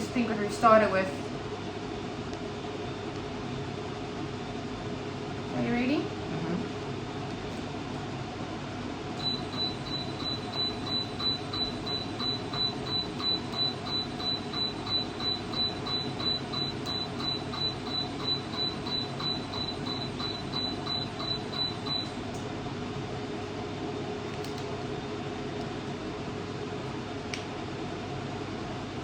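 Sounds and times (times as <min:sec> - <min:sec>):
fan whir: 0:00.0 - 0:29.0
low machine hum: 0:00.0 - 0:29.0
machine beeping: 0:09.2 - 0:22.2.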